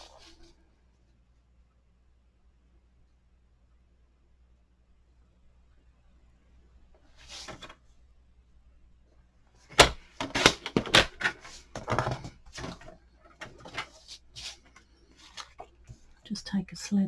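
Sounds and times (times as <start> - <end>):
paper rustling: 7.2 - 7.8, 9.7 - 16.1.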